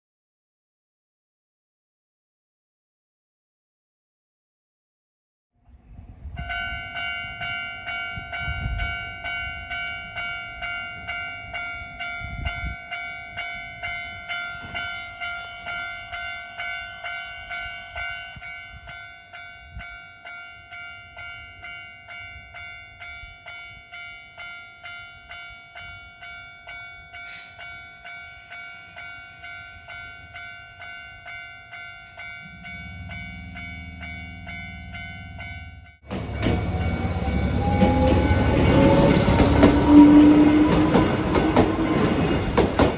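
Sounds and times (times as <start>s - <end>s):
level crossing warning bell: 6.4s - 42.9s
train rumble: 31.7s - 42.9s.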